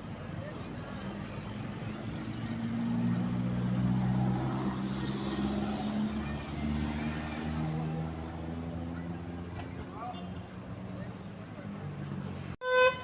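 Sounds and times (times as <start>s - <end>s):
traffic noise: 0.0s - 13.0s
multi-tone bus air horn tune: 12.6s - 13.0s.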